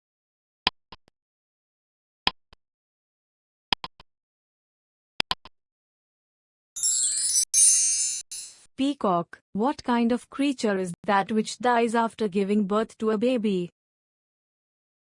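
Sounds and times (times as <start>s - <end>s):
bright high shimmering chime: 6.8s - 8.6s.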